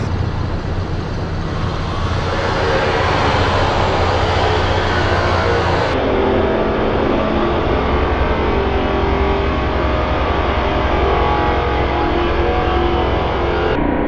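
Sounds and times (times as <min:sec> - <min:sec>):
milling machine cutting metal: 0:01.3 - 0:06.0.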